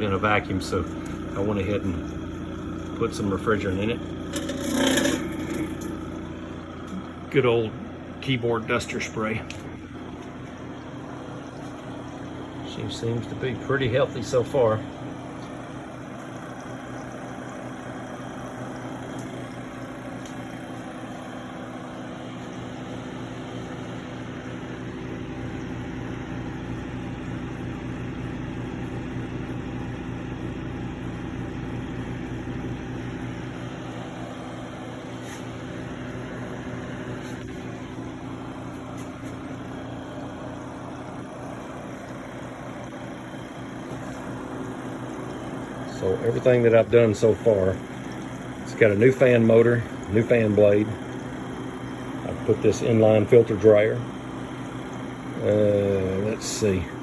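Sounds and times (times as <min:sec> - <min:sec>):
refrigerator compressor humming: 0:00.0 - 0:57.0.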